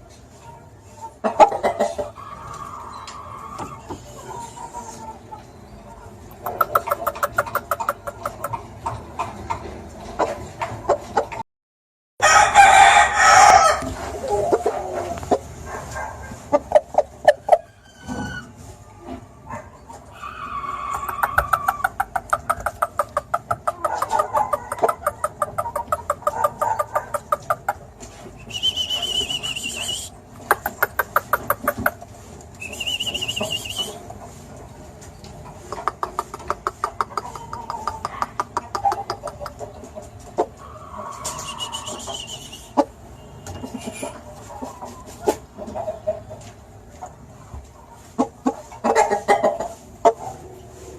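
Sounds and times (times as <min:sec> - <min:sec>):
rooster clucking: 0:00.5 - 0:11.4, 0:12.2 - 0:18.6, 0:19.5 - 0:34.4, 0:35.4 - 0:50.5
rooster crowing: 0:12.2 - 0:13.9, 0:17.4 - 0:18.4, 0:20.2 - 0:21.9.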